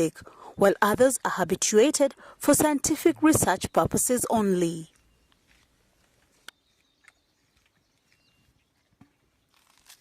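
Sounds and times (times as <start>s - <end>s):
faint bird chirp: 3.4s - 5.7s, 6.3s - 9.3s.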